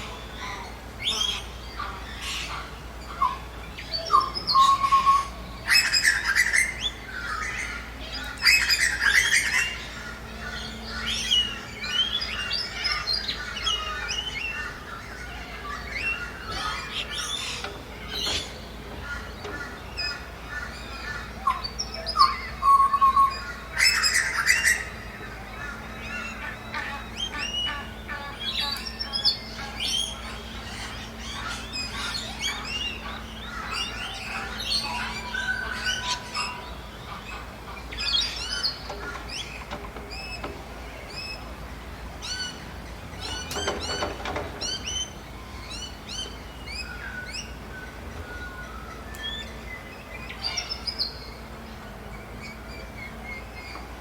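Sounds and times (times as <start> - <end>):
birds chirping and whistling: 0.0 - 54.0.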